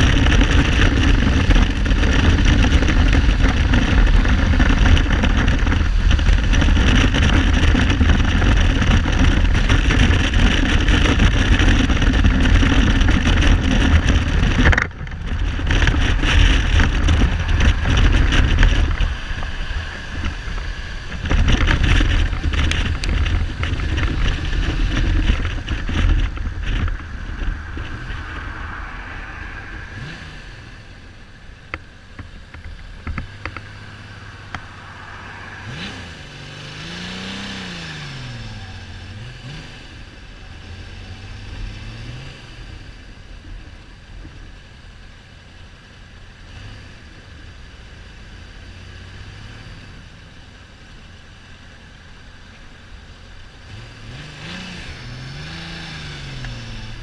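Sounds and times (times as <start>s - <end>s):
wind rush on microphone: 0.0s - 31.2s.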